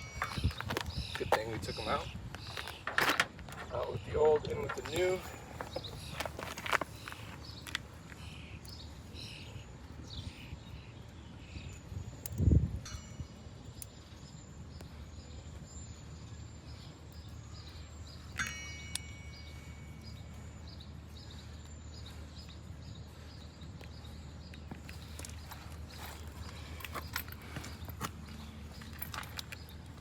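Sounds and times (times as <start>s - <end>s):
metallic clinks of brake pads: 0.0s - 7.9s, 18.3s - 22.6s, 23.7s - 30.0s.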